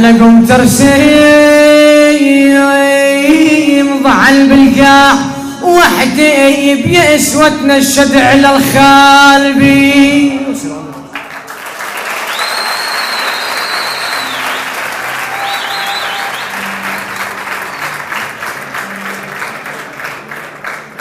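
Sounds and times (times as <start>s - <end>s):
crowd applauding: 11.1s - 21.0s
high whistles: 12.1s - 18.4s.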